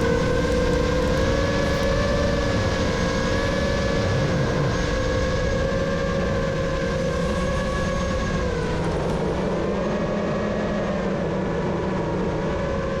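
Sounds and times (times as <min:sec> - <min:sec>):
quadcopter motors whining: 0:00.0 - 0:05.7
low rumble of wind: 0:00.0 - 0:13.0.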